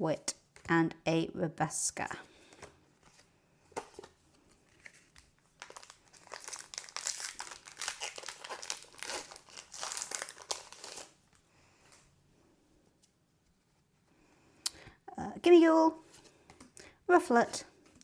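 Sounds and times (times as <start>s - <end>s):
foil wrapper crinkling and tearing: 4.8s - 11.2s.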